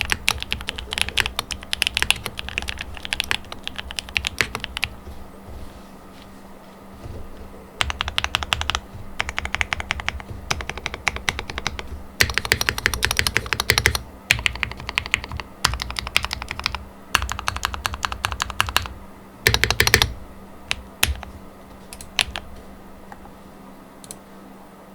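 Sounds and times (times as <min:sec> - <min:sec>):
mechanical keyboard typing: 0:00.0 - 0:05.0, 0:07.8 - 0:21.3, 0:21.9 - 0:22.5.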